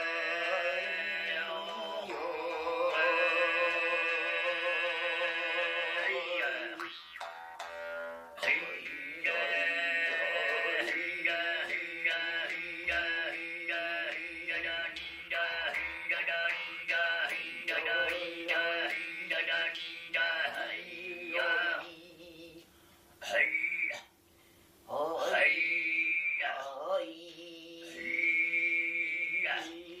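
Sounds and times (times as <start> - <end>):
man throat singing: 0.0 - 7.1.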